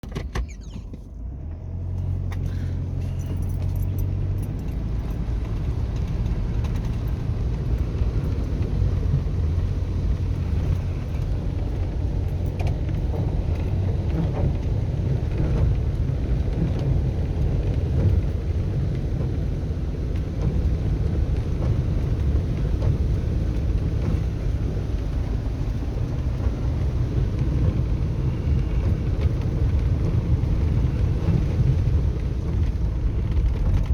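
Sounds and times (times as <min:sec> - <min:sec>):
car engine and road rumble: 0:00.0 - 0:33.9
faint clicks and rattles: 0:02.0 - 0:27.8.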